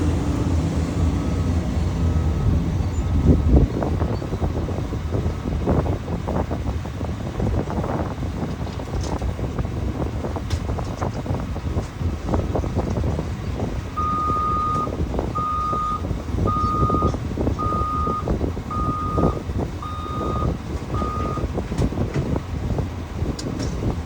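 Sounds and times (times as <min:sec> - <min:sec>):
loud low rumble: 0:00.0 - 0:07.6
vehicle backup alarm beeping: 0:00.1 - 0:05.8, 0:13.9 - 0:21.6.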